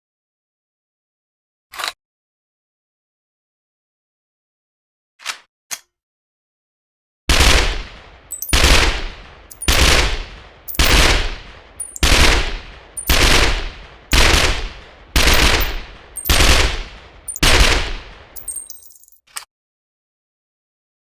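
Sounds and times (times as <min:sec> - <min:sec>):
submachine gun bursts: 0:09.5 - 0:10.1, 0:10.7 - 0:11.2, 0:15.2 - 0:17.8.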